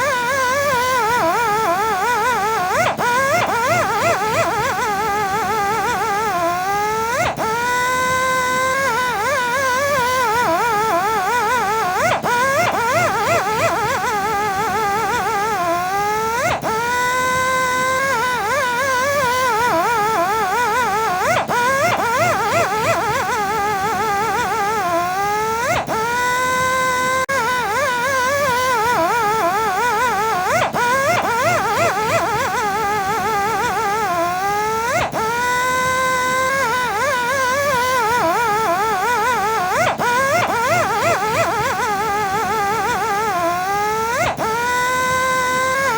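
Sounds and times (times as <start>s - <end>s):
polishing machine whining: 0.0s - 45.9s.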